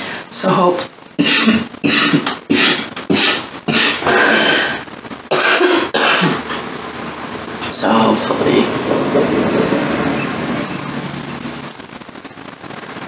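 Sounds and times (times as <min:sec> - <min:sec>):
woman coughing hard: 0:01.2 - 0:04.6, 0:05.3 - 0:06.6.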